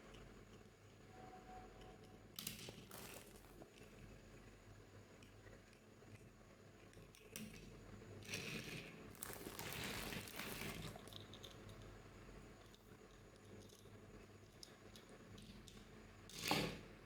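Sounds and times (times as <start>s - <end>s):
plastic packaging crinkling: 2.9s - 3.7s, 9.1s - 11.1s.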